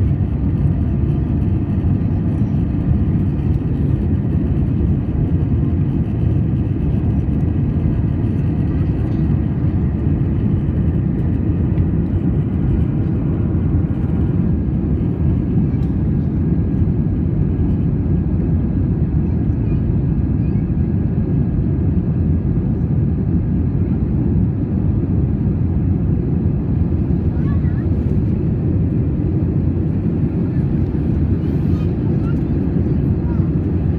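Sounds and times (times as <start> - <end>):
jet engine rumble in cabin: 0.0 - 33.9.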